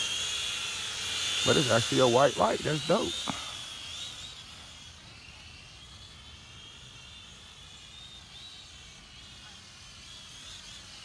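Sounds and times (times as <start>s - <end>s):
drone propellers whining: 1.3s - 3.5s.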